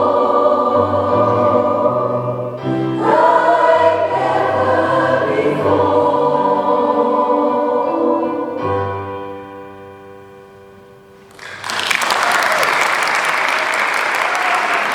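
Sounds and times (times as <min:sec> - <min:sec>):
choir singing: 0:00.0 - 0:09.6
applause: 0:11.3 - 0:14.9.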